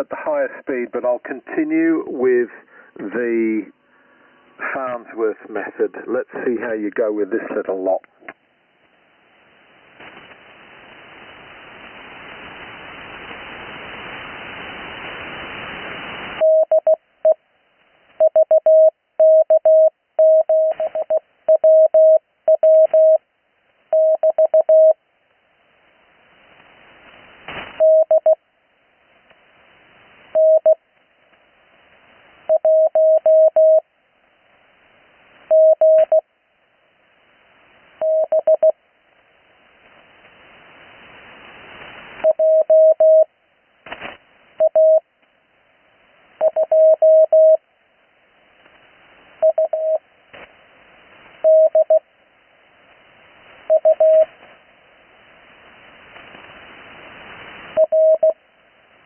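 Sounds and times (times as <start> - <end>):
radio band hiss: 0.0 - 18.9, 25.6 - 28.4, 29.0 - 59.0
morse code tone: 16.4 - 17.0, 18.2 - 23.2, 24.0 - 25.0, 27.8 - 28.4, 30.4 - 30.8, 32.5 - 33.8, 35.5 - 36.2, 38.0 - 38.7, 42.3 - 43.3, 44.6 - 45.0, 46.4 - 47.6, 49.4 - 50.0, 51.4 - 52.0, 53.7 - 54.3, 57.8 - 58.4.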